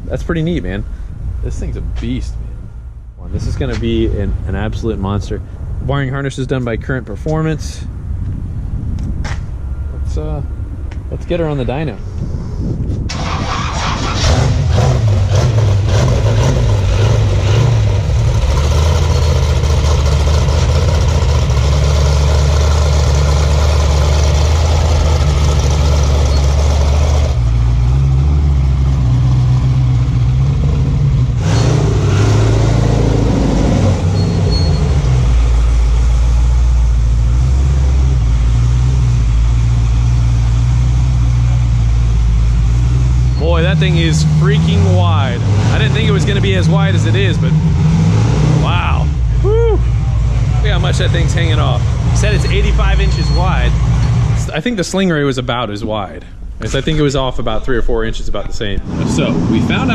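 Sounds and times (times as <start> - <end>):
engine deep exhaust note: 0.0 - 59.9.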